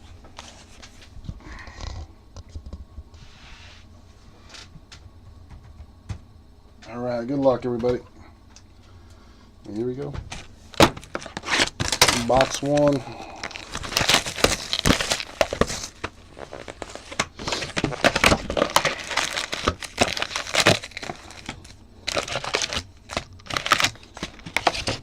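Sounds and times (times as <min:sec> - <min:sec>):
plastic wrapping crinkling and tearing: 0:10.3 - 0:25.0.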